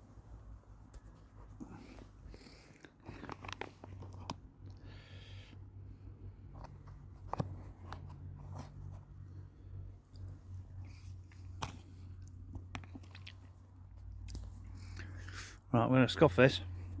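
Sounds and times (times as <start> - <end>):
man chewing food: 10.1 - 15.5.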